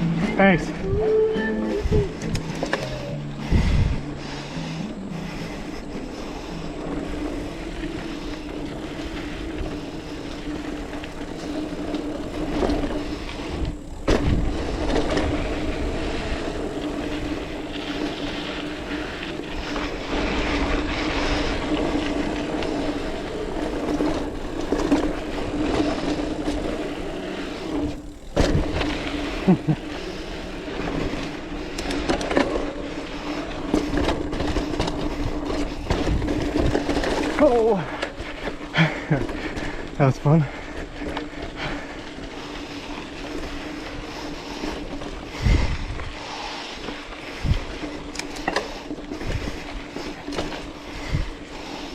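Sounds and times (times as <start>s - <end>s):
wind on microphone: 0.0s - 11.0s, 11.8s - 31.8s, 43.5s - 46.6s, 47.2s - 48.1s, 50.8s - 51.9s
bike knocking and rattling: 0.0s - 51.9s
bike tyres rolling over dirt: 0.0s - 51.9s
steady hum: 0.0s - 51.9s.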